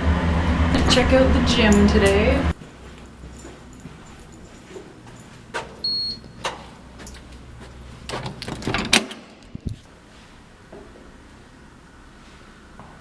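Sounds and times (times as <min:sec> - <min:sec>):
low steady hum: 0:00.0 - 0:12.9
door clicks and knocks: 0:08.1 - 0:09.3.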